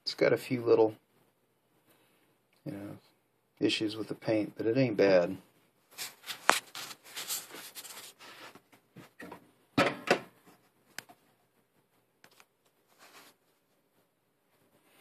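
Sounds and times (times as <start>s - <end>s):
handling rustling: 5.9s - 8.6s, 12.3s - 13.9s.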